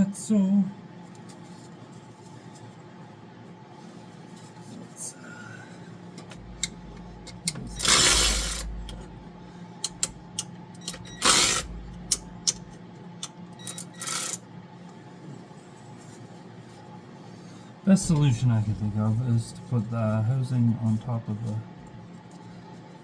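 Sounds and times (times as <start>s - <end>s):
light clicks and taps of tools: 9.8s - 10.2s.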